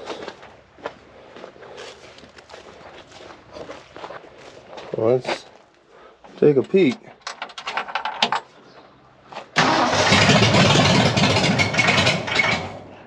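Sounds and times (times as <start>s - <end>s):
engine cranking on starter: 9.6s - 12.9s.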